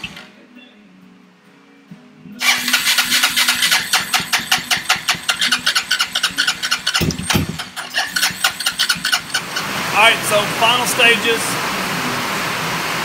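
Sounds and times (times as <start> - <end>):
engine cranking: 0.0 - 0.3, 2.4 - 10.9.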